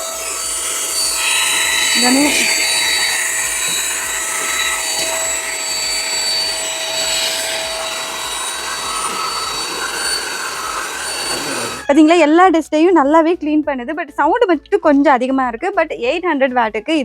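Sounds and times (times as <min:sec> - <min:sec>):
handheld vacuum cleaner running: 0:00.0 - 0:11.9.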